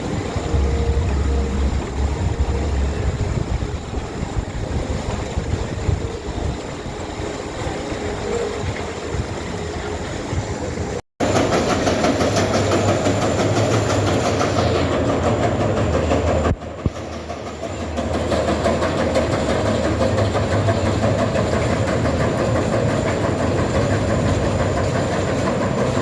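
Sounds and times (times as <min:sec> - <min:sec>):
wind buffeting microphone: 0:00.0 - 0:11.7
roller coaster on track: 0:00.0 - 0:26.0.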